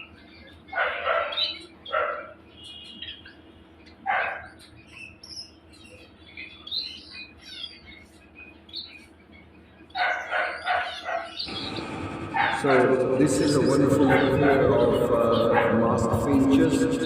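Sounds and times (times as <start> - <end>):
finches chirping: 0.0 - 16.9
small dog yapping: 0.7 - 2.4, 4.0 - 4.6, 10.0 - 11.5.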